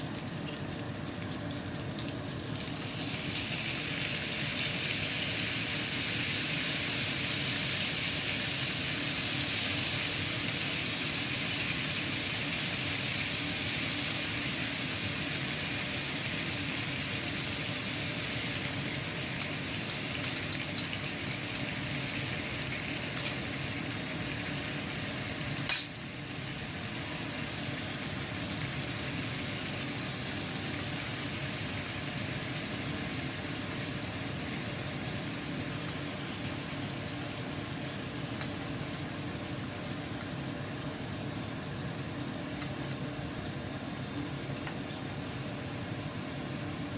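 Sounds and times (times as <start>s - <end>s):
fish sizzling in a pan: 0.0s - 44.0s
utensil clinking against pan: 19.4s - 21.7s.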